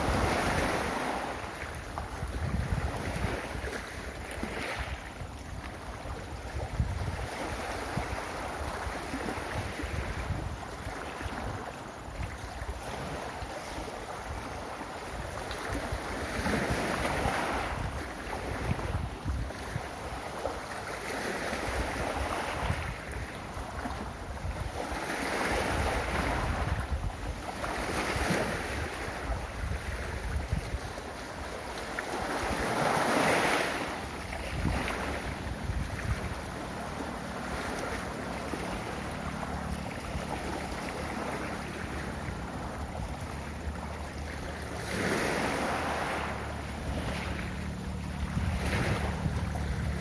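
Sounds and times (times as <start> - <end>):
ocean waves breaking on beach: 0.0 - 50.0.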